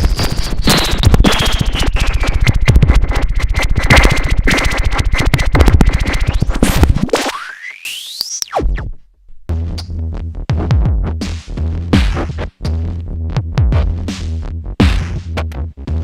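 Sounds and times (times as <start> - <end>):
glitchy synth clicks: 0.0 - 8.9
percussive hits: 3.6 - 7.2, 11.9 - 12.4, 14.8 - 15.6.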